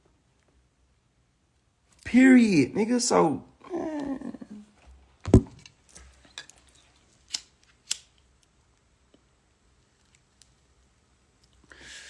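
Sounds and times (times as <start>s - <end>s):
low thump: 5.3s - 5.6s.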